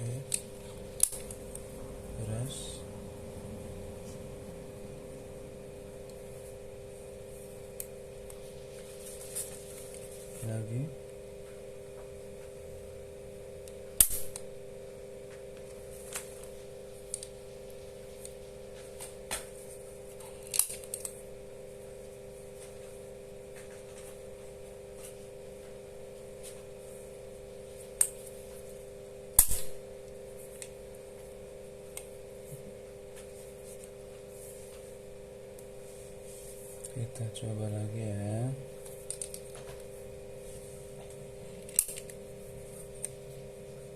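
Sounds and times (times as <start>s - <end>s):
steady low hum: 0.0s - 43.9s
injector pen snapping: 0.3s - 1.7s, 20.4s - 21.2s, 29.4s - 29.8s, 41.6s - 42.2s.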